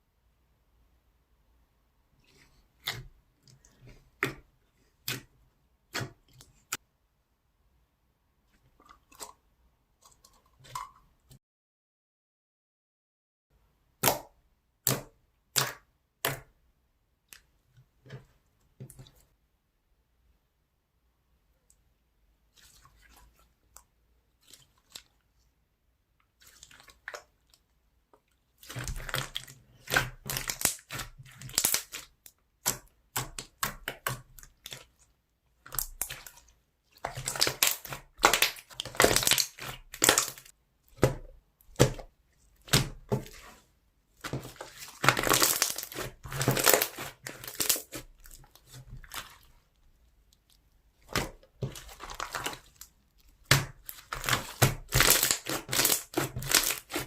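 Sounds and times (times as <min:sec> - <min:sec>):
slime crackling and popping: 0:28.6 - 0:34.9, 0:37.0 - 0:40.5, 0:44.2 - 0:49.3, 0:51.0 - 0:57.0.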